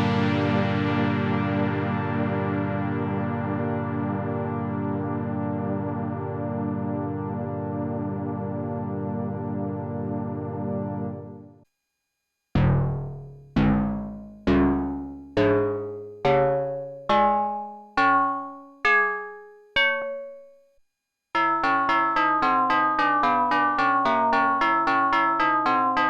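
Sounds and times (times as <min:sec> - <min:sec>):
fast repeating synthesizer notes: 0:12.6 - 0:18.4
synthesizer notes: 0:12.6 - 0:20.4.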